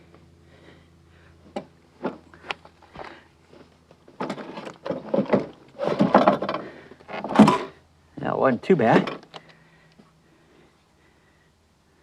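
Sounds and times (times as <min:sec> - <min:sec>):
battery clattering and scraping: 0:02.0 - 0:07.8.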